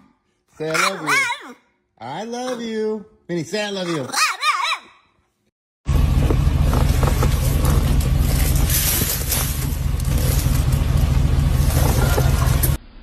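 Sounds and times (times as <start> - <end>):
low motor rumble: 5.9 - 13.0.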